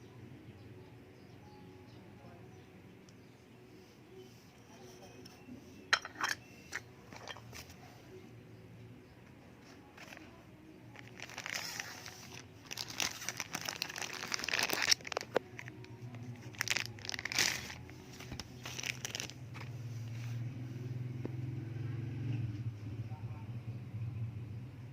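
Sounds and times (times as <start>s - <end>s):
packaging crinkling: 11.0s - 19.7s.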